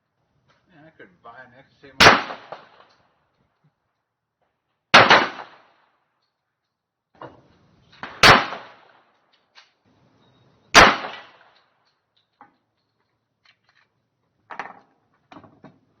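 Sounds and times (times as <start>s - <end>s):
pistol shots with echo: 2.0s - 2.8s, 4.9s - 5.7s, 8.0s - 8.8s, 10.7s - 11.4s.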